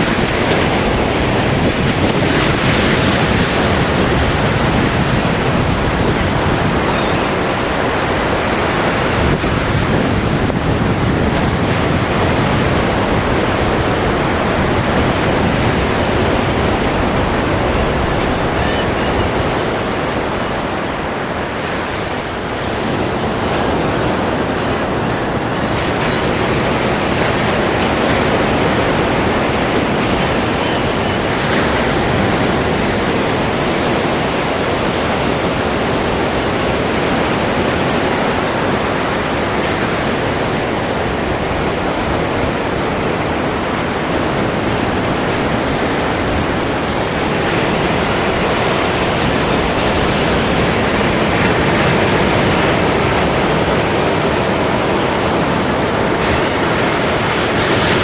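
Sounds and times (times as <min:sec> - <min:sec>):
ocean waves breaking: 0:00.0 - 0:58.0.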